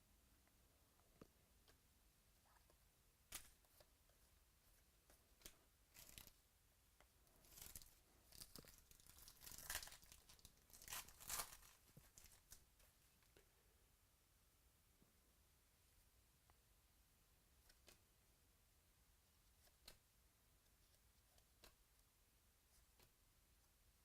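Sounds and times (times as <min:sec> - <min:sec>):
wrapper tearing and crinkling: 0:06.0 - 0:06.3, 0:07.4 - 0:12.6.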